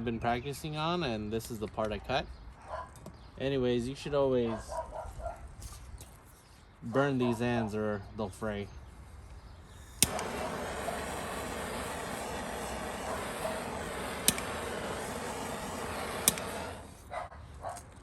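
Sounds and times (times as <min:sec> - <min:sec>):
hissing flame: 0:09.6 - 0:17.2
torch lighter igniter clicks: 0:09.7 - 0:17.1.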